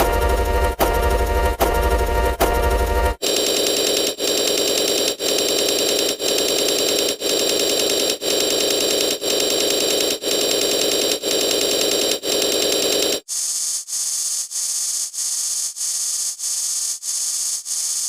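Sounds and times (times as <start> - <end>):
harsh buzzing static: 0.0 - 18.0.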